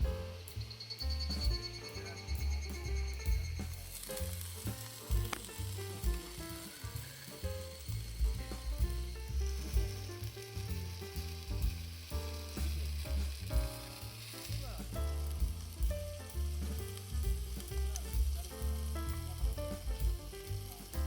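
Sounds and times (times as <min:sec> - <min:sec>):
food sizzling in a hot pan: 0:02.6 - 0:21.0.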